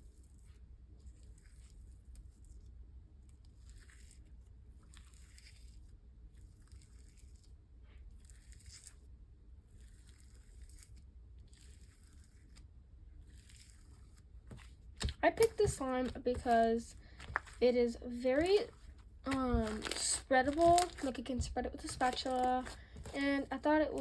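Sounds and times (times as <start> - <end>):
slime squishing and crackling: 3.3 - 24.0.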